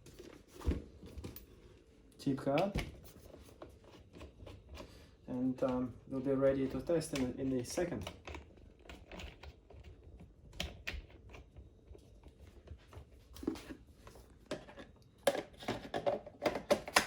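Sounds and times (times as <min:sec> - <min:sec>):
plastic parts clicking and tapping: 0:14.5 - 0:17.0.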